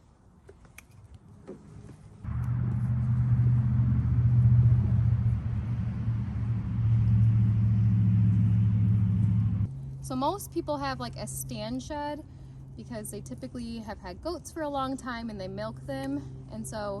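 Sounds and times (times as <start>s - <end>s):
engine running with low hum: 1.4s - 14.2s.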